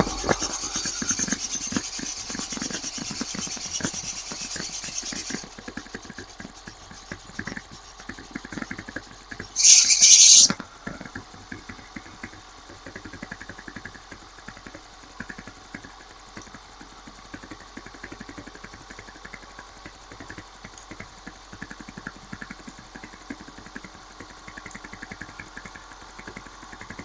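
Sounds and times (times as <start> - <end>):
drive belt squealing: 0.0 - 5.6, 9.6 - 10.5
spray hissing: 9.6 - 10.5.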